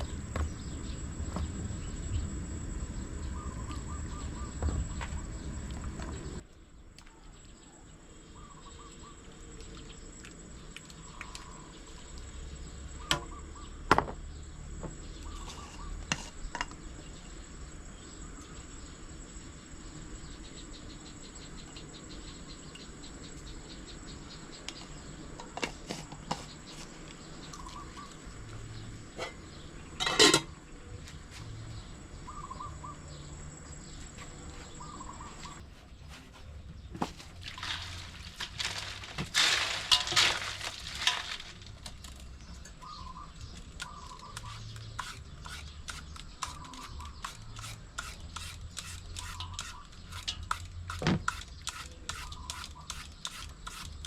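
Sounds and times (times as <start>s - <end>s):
high insect trill: 0.0s - 6.4s
kitchen clicks and knocks: 30.0s - 30.5s.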